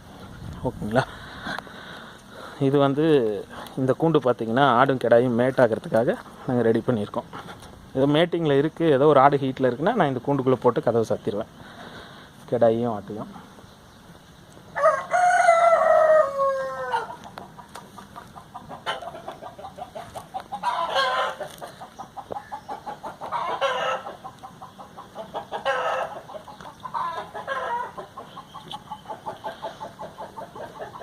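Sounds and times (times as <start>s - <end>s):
chickens clucking: 14.5s - 31.0s
rooster crowing: 14.8s - 17.2s, 27.0s - 28.0s.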